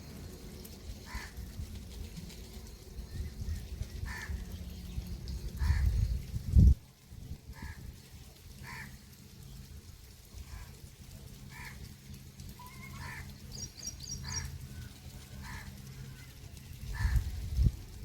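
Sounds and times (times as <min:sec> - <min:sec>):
crow cawing: 0:01.1 - 0:01.4, 0:04.0 - 0:04.4, 0:05.6 - 0:05.9, 0:07.5 - 0:07.9, 0:08.6 - 0:09.0, 0:11.5 - 0:11.9, 0:12.6 - 0:13.5, 0:14.2 - 0:14.5, 0:15.4 - 0:15.9, 0:16.9 - 0:17.3
small bird chirping: 0:12.6 - 0:14.9.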